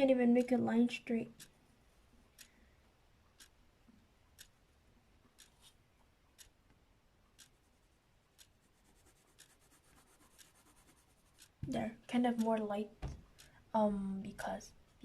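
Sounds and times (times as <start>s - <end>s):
soft ticking: 0.0s - 15.0s
pencil drawing on paper: 8.4s - 11.4s.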